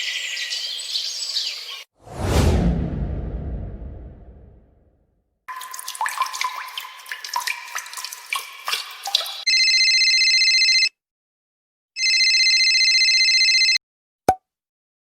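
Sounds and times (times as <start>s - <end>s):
watery drips and plinks: 5.5s - 9.5s
telephone ringing: 9.5s - 10.9s, 12.0s - 13.8s.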